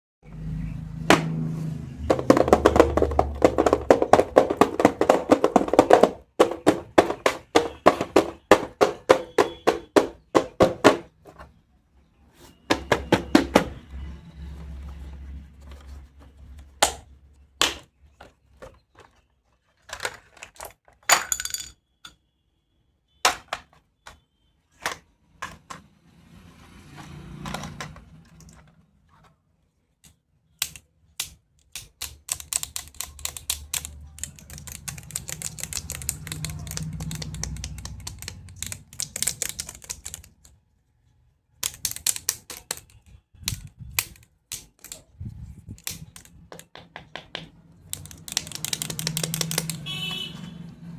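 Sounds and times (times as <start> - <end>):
plastic toy tools clicking: 30.0 - 40.6, 41.6 - 49.9
rapid clicking and clattering: 45.9 - 49.8.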